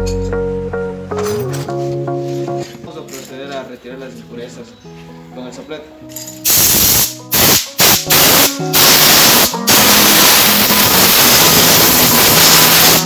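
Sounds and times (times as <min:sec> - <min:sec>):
air blow gun hissing: 0:06.4 - 0:13.0.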